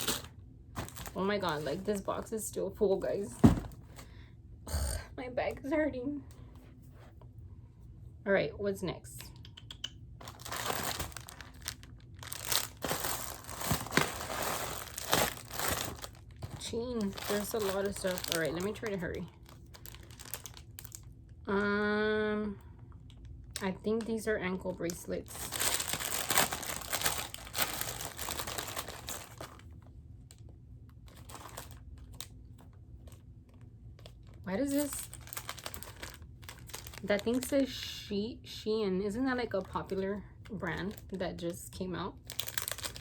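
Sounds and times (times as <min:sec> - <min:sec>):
packaging crinkling: 0:00.0 - 0:02.3, 0:10.2 - 0:21.2, 0:24.9 - 0:29.8, 0:31.0 - 0:37.7, 0:42.2 - 0:43.0.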